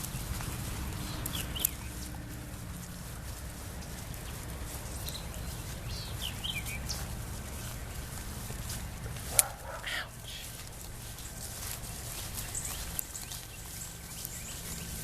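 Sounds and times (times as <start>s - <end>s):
low wind rumble: 0.0s - 15.0s
bird chirps: 1.0s - 2.1s, 3.8s - 8.2s, 11.2s - 15.0s.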